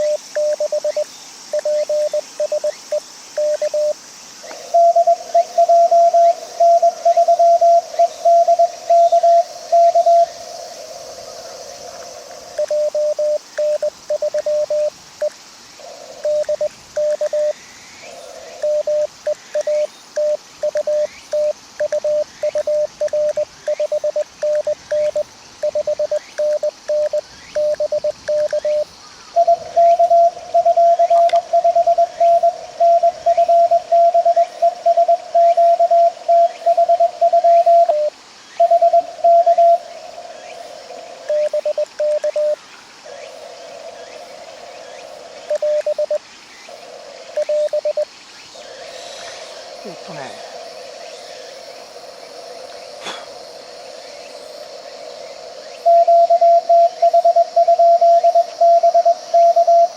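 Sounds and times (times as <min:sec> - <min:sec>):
morse code tones: 0:00.0 - 0:01.0, 0:01.6 - 0:04.0, 0:12.6 - 0:15.3, 0:16.2 - 0:17.5, 0:18.6 - 0:28.9, 0:41.3 - 0:42.6, 0:45.5 - 0:46.2, 0:47.4 - 0:48.0
higher pitched morse signal: 0:00.0 - 0:04.0, 0:12.5 - 0:15.4, 0:16.2 - 0:17.6, 0:18.6 - 0:39.9, 0:41.2 - 0:42.6, 0:45.5 - 0:46.2, 0:47.3 - 0:48.1, 0:55.8 - 0:59.9.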